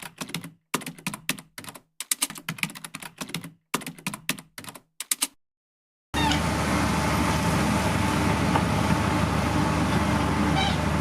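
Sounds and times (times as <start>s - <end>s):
keyboard typing clicks: 0.0s - 5.4s.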